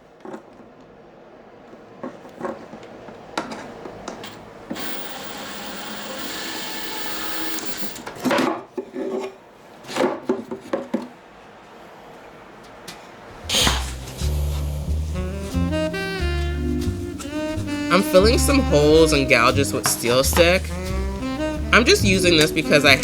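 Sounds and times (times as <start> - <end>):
small power tool running: 4.3 - 8.1.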